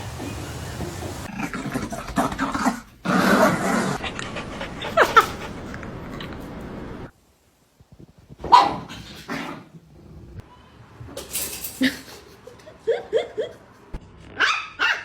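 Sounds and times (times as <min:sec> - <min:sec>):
dog vocalizing: 0:03.8 - 0:06.0.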